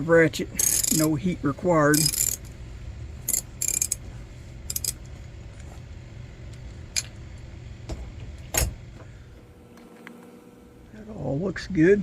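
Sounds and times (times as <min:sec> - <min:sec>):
steady low hum: 0:00.0 - 0:12.0
metal parts clicking: 0:00.6 - 0:01.2, 0:01.9 - 0:02.5, 0:03.2 - 0:04.0, 0:04.7 - 0:05.1.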